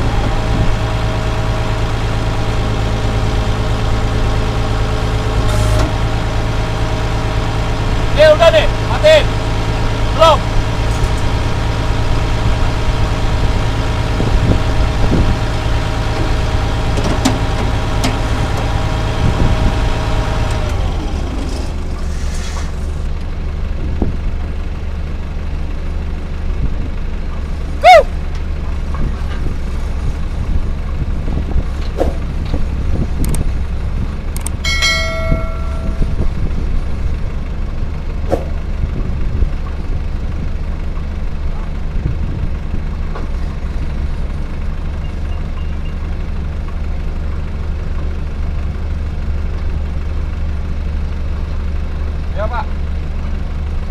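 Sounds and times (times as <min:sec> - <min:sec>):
bulldozer diesel engine: 0:00.0 - 0:53.9
brief steady tone: 0:34.7 - 0:36.2.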